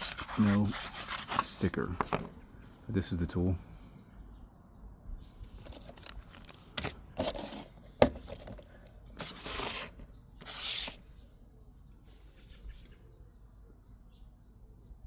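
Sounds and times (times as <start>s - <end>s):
packaging rustling and scraping: 0.0s - 2.4s, 5.4s - 11.0s.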